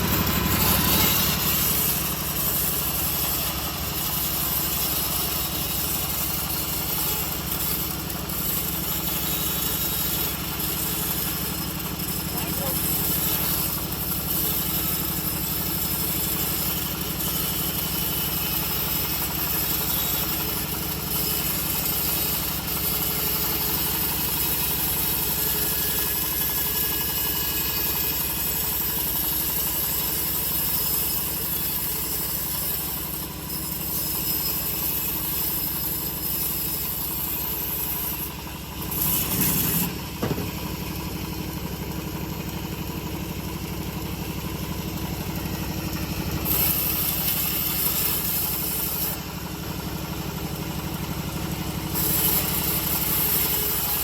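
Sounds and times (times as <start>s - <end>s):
bandsaw mill engine running: 0.0s - 54.0s.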